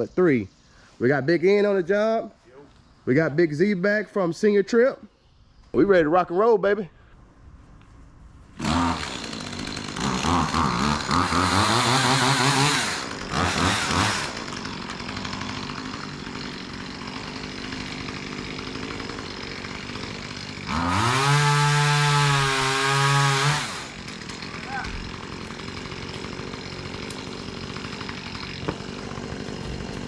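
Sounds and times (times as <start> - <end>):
chainsaw revving and idling: 8.6 - 30.0.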